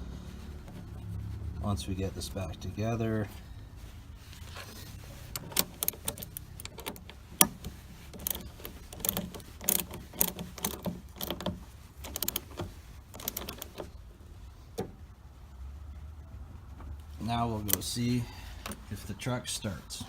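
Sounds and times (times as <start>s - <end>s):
metallic clicks and clinks: 5.4s - 12.6s, 13.2s - 13.9s.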